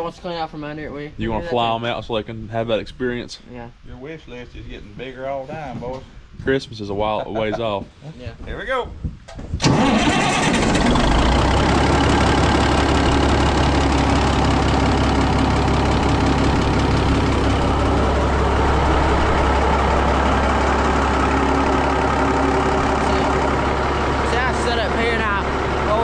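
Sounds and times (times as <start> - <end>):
sawmill engine running: 9.6 - 26.0.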